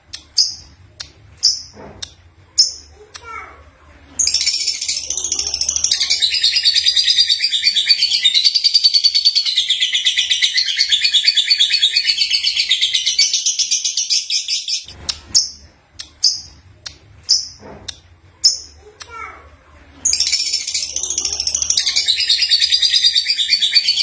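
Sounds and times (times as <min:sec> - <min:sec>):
bird chirps: 0:04.2 - 0:16.6, 0:20.1 - 0:24.0.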